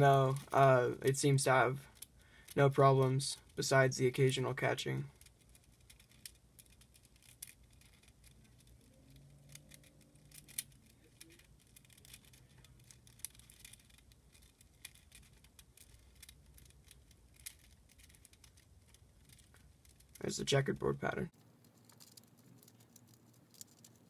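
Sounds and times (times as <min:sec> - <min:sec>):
plastic puzzle cube clicking: 0:05.1 - 0:20.2, 0:21.4 - 0:24.0.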